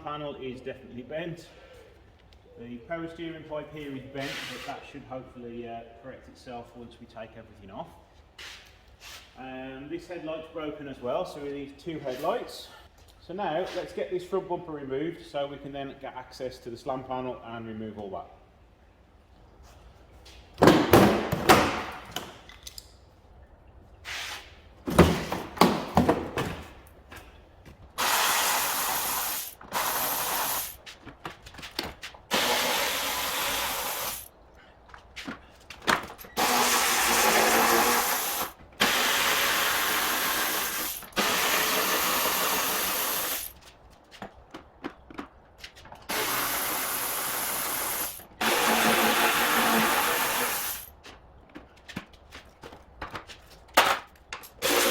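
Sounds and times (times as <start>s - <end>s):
parts knocking and clattering: 24.8s - 27.9s, 51.0s - 54.8s
power drill bursts: 28.0s - 30.8s, 32.3s - 34.3s, 36.3s - 43.6s, 46.1s - 50.9s, 54.6s - 54.9s.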